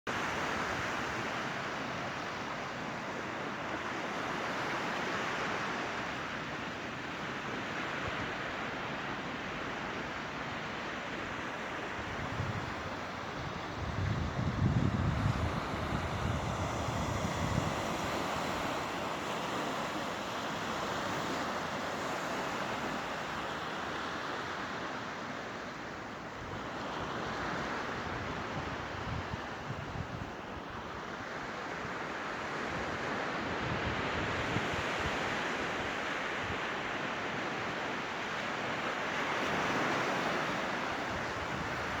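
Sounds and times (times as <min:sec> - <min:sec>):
surf washing in: 0:00.1 - 0:42.0
wind buffeting microphone: 0:12.1 - 0:18.4.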